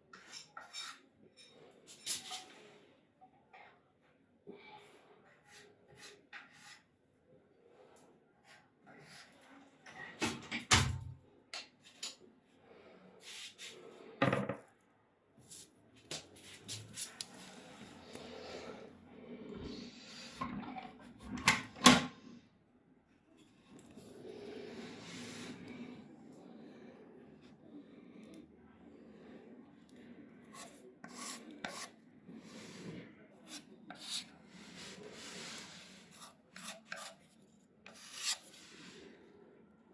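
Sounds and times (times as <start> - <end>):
rubbing and scraping: 28.9 - 39.1.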